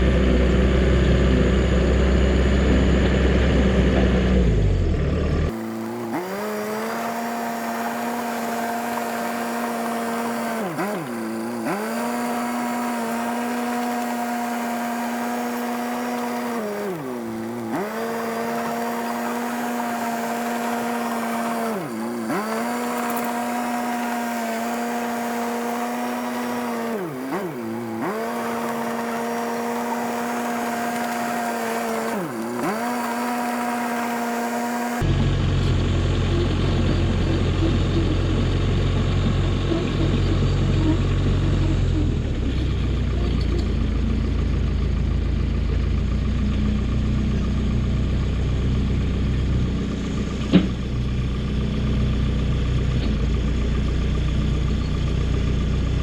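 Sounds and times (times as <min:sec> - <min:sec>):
low engine rumble: 0:00.0 - 0:06.8, 0:35.0 - 0:56.0
bulldozer mechanical whine: 0:00.0 - 0:56.0.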